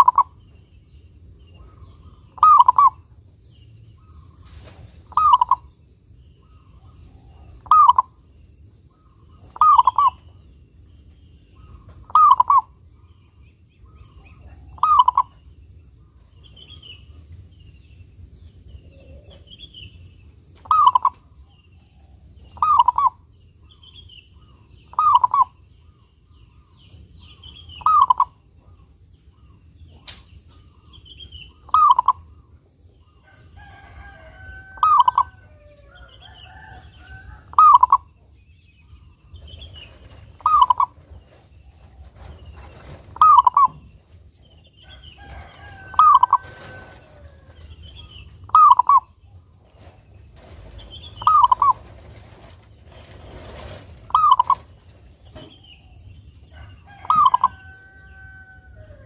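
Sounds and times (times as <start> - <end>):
dove cooing: 0.0 - 0.4, 1.5 - 3.1, 5.1 - 5.7, 6.4 - 8.2, 8.9 - 10.4, 11.6 - 12.8, 13.9 - 15.5, 20.6 - 21.2, 22.0 - 23.2, 24.4 - 25.6, 27.4 - 28.8, 31.4 - 32.3, 33.4 - 38.1, 39.8 - 44.0, 44.8 - 49.2, 49.8 - 55.9, 56.6 - 59.0
small birds chirping: 0.0 - 59.0.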